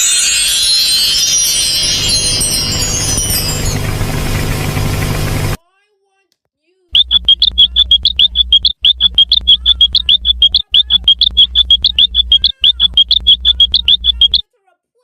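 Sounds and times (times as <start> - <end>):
rapid high-pitched cartoon chirping: 7.0 - 14.4.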